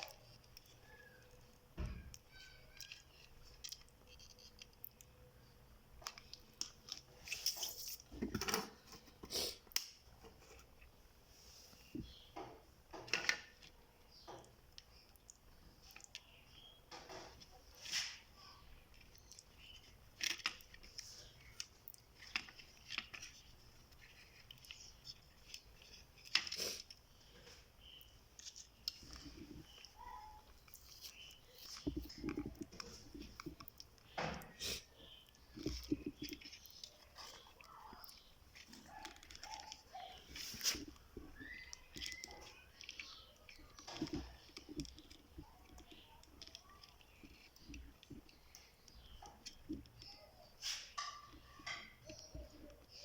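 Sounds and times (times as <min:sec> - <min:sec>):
hands handling small objects: 0:00.0 - 0:11.0, 0:13.0 - 0:53.0
scrape: 0:50.6 - 0:51.0.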